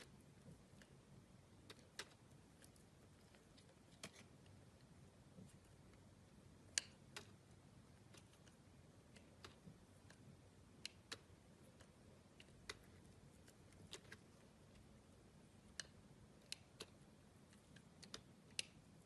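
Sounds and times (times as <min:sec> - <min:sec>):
quiet hiss: 0:00.0 - 0:19.0
small clicks and taps: 0:01.6 - 0:04.6, 0:06.7 - 0:14.9, 0:15.6 - 0:18.9.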